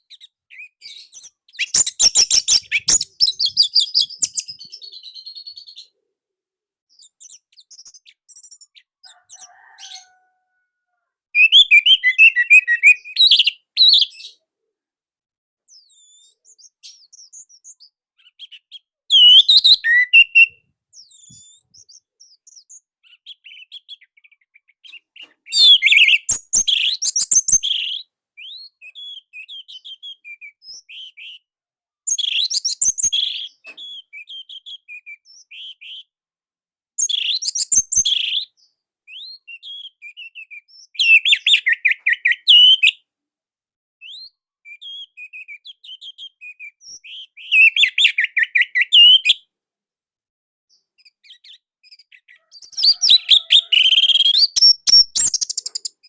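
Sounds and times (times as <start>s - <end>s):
soft bird chirps: 0.0s - 6.0s, 6.9s - 10.6s, 15.6s - 31.4s, 32.1s - 36.1s, 37.0s - 43.0s, 50.7s - 56.0s.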